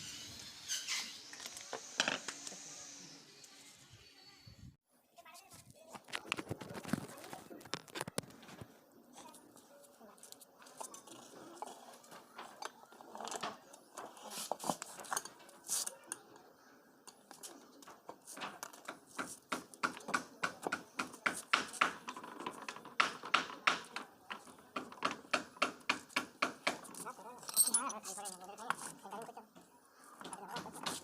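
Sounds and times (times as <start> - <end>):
metal tools tapping on metal pump: 26.8 - 28.8.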